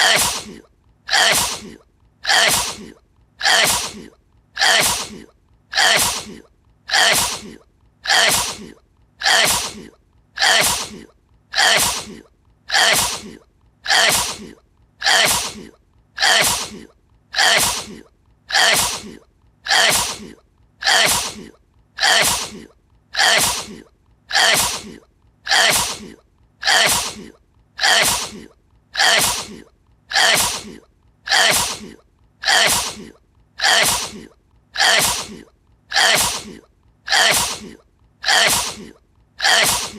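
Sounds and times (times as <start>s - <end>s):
sneeze: 0.0s - 39.9s.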